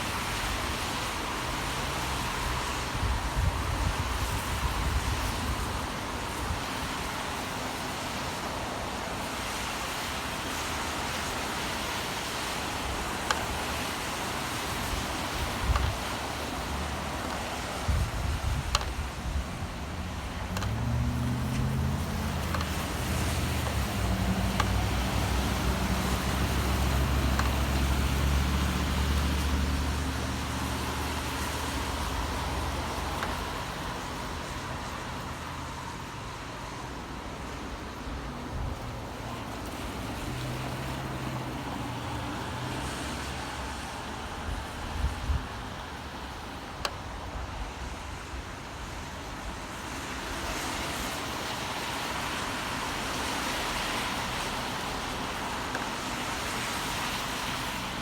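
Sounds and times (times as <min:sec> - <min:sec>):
city traffic: 0:00.0 - 0:58.0
rain hiss: 0:00.0 - 0:58.0
vehicle engine hum: 0:12.3 - 0:46.6
dripping ticks: 0:19.9 - 0:34.2.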